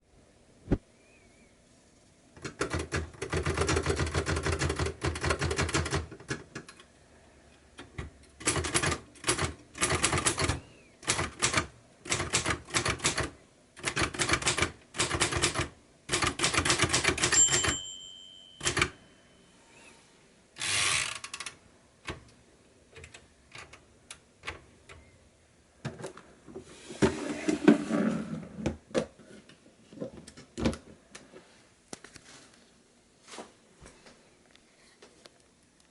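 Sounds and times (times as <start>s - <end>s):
typewriter key strikes: 8.4s - 17.9s, 18.6s - 19.0s
typewriter bell ringing: 17.1s - 19.2s.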